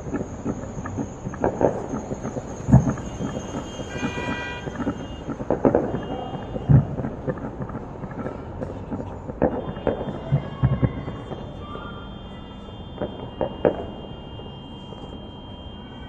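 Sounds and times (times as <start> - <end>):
heavy firework booms: 0.0 - 15.8
firework whistling: 0.0 - 16.0
fireworks cracking and banging: 0.0 - 16.0.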